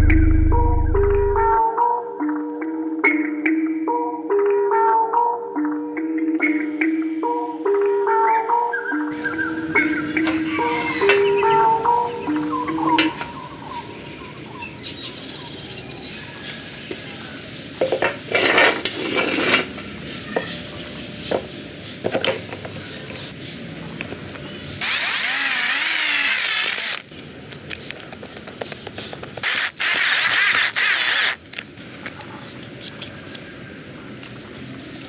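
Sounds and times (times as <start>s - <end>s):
small power tool whirring: 9.2s - 12.4s, 24.8s - 27.1s, 29.4s - 31.6s.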